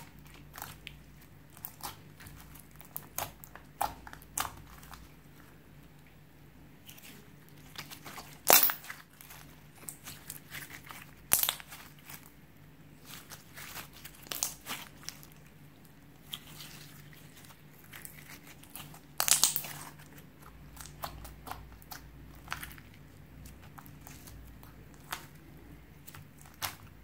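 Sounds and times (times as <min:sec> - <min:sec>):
slime squished by hand: 0:00.0 - 0:05.2, 0:06.8 - 0:12.3, 0:12.9 - 0:15.5, 0:16.2 - 0:27.0
sticky clicks and crackles: 0:17.9 - 0:27.0.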